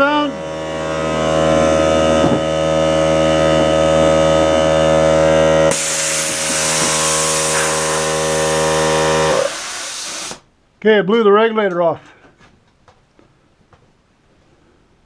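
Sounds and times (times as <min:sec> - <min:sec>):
air compressor motor hum: 0:00.0 - 0:10.4
loud hiss of escaping air: 0:05.7 - 0:10.4.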